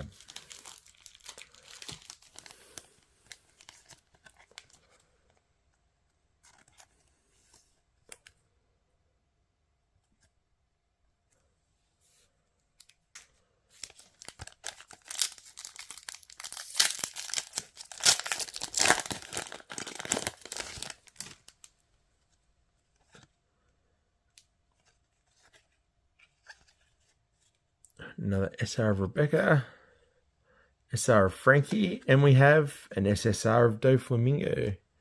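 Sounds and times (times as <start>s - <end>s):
foil pack tearing and crinkling: 0.0s - 2.9s, 13.8s - 21.6s.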